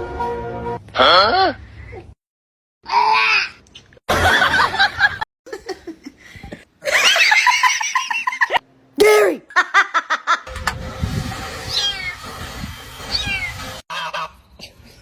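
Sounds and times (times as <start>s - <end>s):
person laughing: 6.8s - 10.4s.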